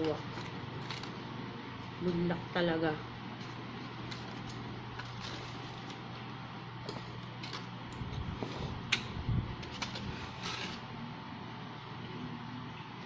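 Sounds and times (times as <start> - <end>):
steady low hum: 0.0 - 13.0
food handling clicks and knocks: 3.4 - 6.0, 6.8 - 10.8.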